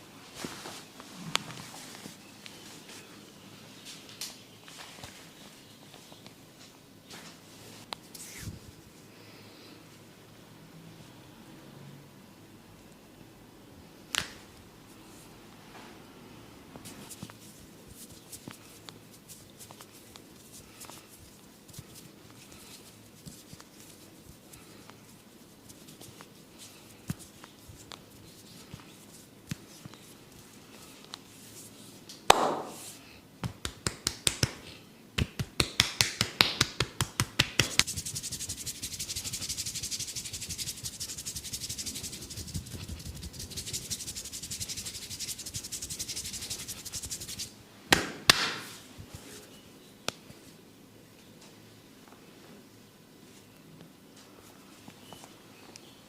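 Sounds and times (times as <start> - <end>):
loud slap on skin: 14.1 - 14.4, 32.3 - 32.8, 47.9 - 48.7
light taps and rubbing on skin: 16.9 - 31.7, 32.4 - 47.5.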